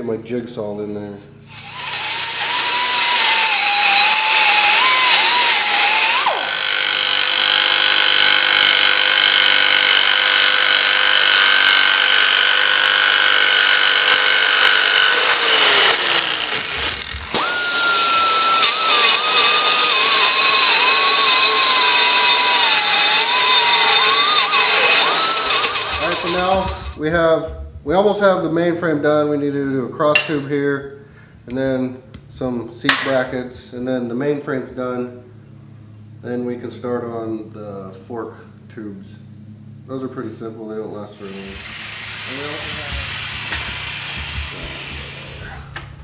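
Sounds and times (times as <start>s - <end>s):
power tool cutting steel: 1.5s - 27.0s, 41.2s - 45.9s.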